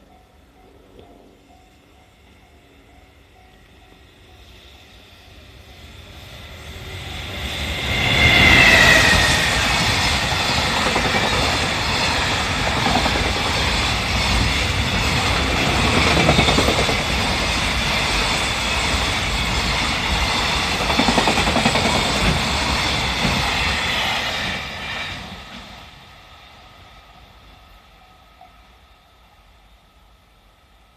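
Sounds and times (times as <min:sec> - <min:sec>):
freight train wheels clattering: 0:08.0 - 0:25.8.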